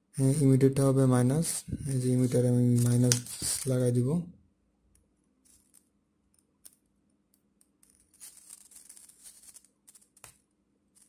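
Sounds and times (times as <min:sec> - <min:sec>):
scratchy rustling: 0:01.8 - 0:03.9, 0:08.0 - 0:10.2.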